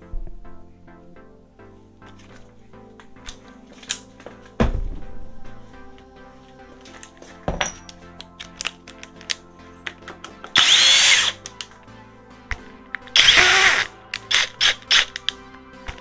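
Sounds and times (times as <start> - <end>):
impact driver driving screw into wood: 10.6 - 11.4, 13.2 - 15.2.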